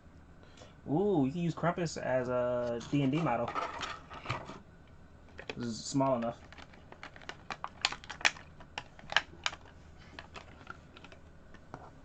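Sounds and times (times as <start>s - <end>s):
plastic miniatures clicking: 5.4s - 11.2s.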